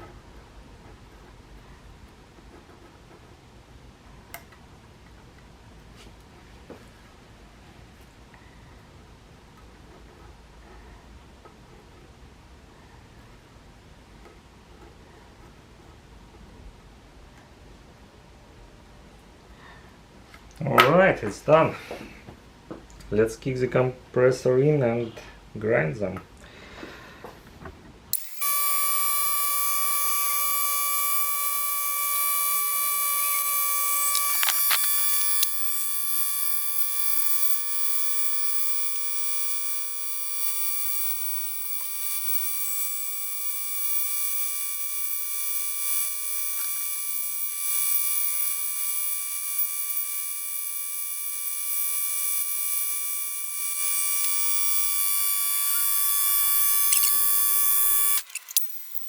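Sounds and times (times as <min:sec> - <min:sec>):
air die grinder whining: 0:28.1 - 0:59.0.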